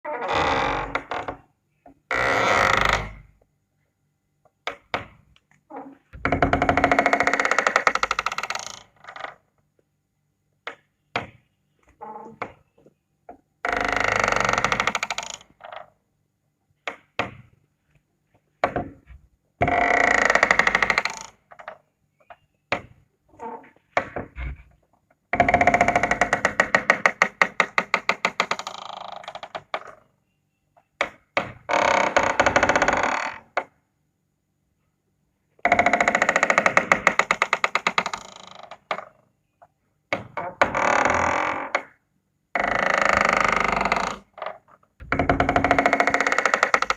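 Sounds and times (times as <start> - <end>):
doors opening with stuttering creak: 0.1 - 1.4, 2.1 - 3.3, 5.7 - 9.4, 25.4 - 30.0, 31.7 - 33.6, 35.7 - 39.2, 40.2 - 42.0, 42.6 - 46.9.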